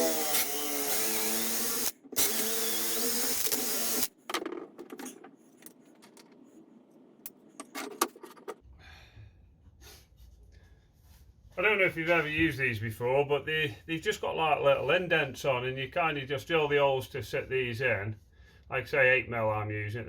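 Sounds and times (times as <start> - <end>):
electric drill boring wood: 0.0 - 4.1.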